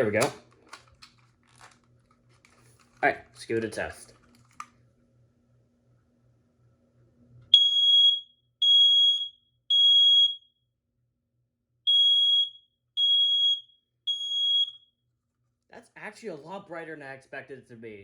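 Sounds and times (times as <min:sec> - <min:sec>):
smoke alarm beeps: 0:07.5 - 0:10.6, 0:11.9 - 0:15.0.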